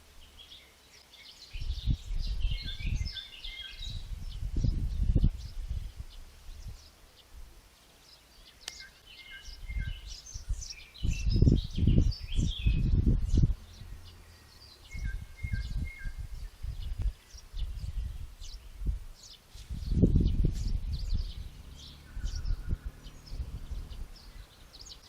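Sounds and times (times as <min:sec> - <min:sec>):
small birds chirping: 0:00.0 - 0:25.0
heavy low rumbles: 0:19.8 - 0:24.6.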